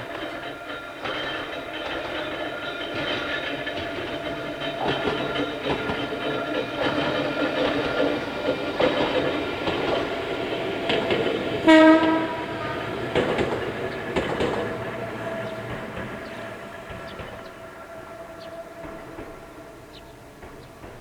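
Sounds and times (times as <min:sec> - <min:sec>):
electric train motors whining: 0:00.0 - 0:21.0
wheels clacking over rail joints: 0:00.0 - 0:21.0
train horn blast: 0:11.6 - 0:13.6.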